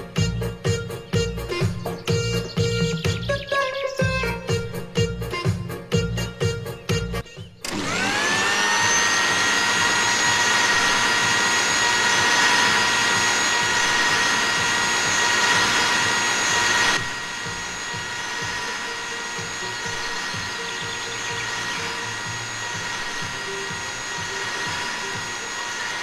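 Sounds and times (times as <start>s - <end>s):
kitchen blender motor whining: 7.6s - 26.0s.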